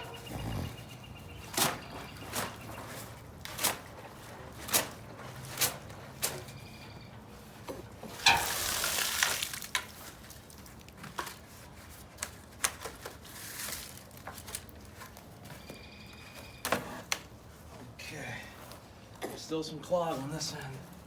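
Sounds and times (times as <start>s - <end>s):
water spraying from a hose: 8.2s - 9.8s.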